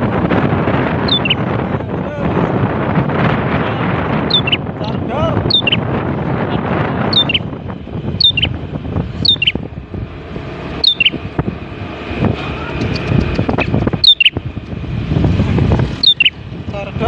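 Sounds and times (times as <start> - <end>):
bird calling: 1.0 - 1.5, 4.2 - 4.7, 5.4 - 5.9, 7.1 - 7.5, 8.2 - 8.6, 9.2 - 9.6, 10.8 - 11.2, 12.9 - 14.4, 16.0 - 16.4.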